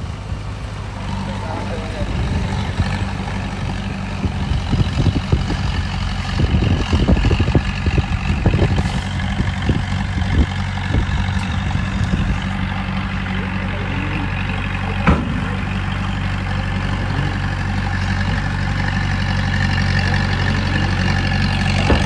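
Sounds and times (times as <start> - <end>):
diesel engine running: 0.0 - 22.0
knocks and clanks: 14.7 - 18.7, 21.0 - 22.0.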